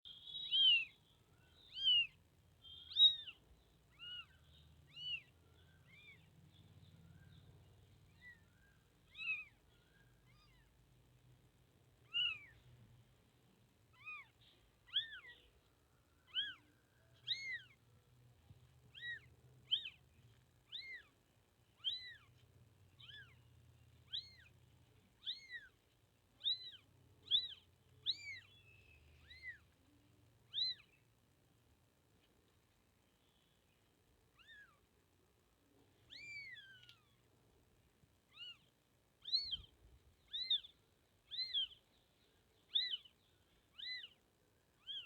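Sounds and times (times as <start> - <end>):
kitten mewing: 17.3 - 17.8, 18.9 - 20.0, 20.7 - 21.1, 21.8 - 22.3, 24.1 - 24.5, 25.2 - 25.8, 26.4 - 28.6, 30.5 - 30.9, 36.1 - 37.2.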